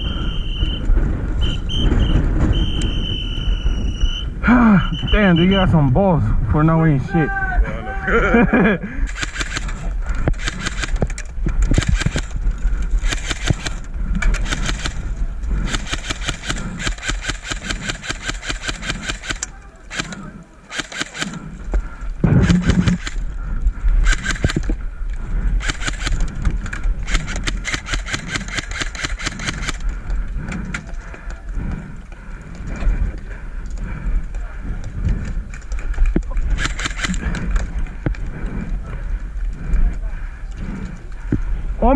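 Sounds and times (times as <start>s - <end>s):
low rumble on microphone: 0.0s - 7.0s
airsoft guns full-auto firing: 9.0s - 12.4s, 13.0s - 21.5s, 22.2s - 23.2s, 24.0s - 24.7s, 25.6s - 26.3s, 27.0s - 29.8s, 36.5s - 37.4s.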